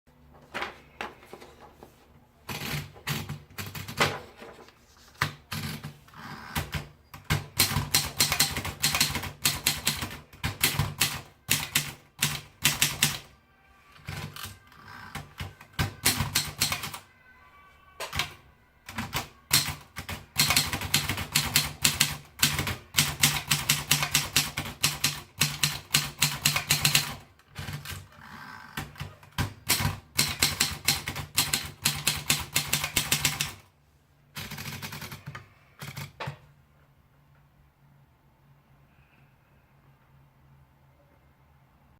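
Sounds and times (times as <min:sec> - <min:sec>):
typewriter keystrokes: 0:02.5 - 0:04.2, 0:06.6 - 0:13.3, 0:14.0 - 0:17.0, 0:18.1 - 0:28.1, 0:28.8 - 0:33.6, 0:34.4 - 0:36.4.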